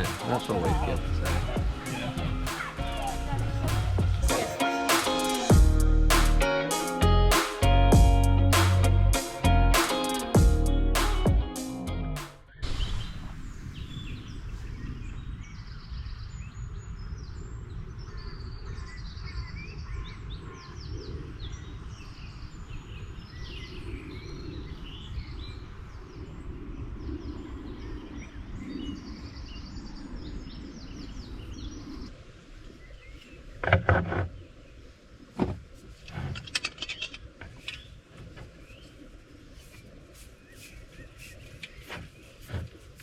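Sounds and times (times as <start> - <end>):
low rumble: 0.0 - 4.4
birds chirping and trilling: 0.0 - 43.0.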